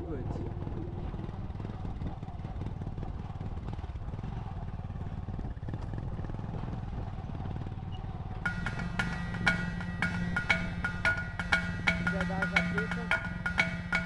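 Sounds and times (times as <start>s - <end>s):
low rumble: 0.0s - 3.1s
faint held tone: 8.5s - 14.0s
marimba music: 8.5s - 14.0s.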